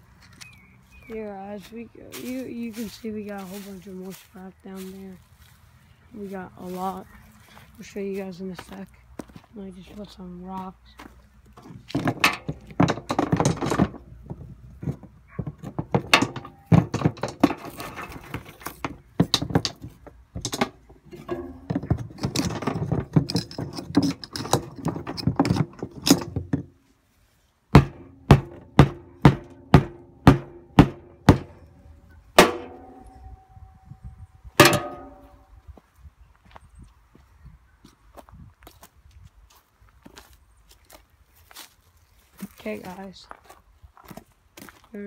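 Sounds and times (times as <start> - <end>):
rocks clattering on metal frame: 11.0 - 26.9, 27.7 - 35.6
ringing metal clanks: 15.4 - 19.8, 20.4 - 26.4, 27.8 - 34.0, 34.6 - 35.5
evenly spaced knocks: 27.8 - 31.8.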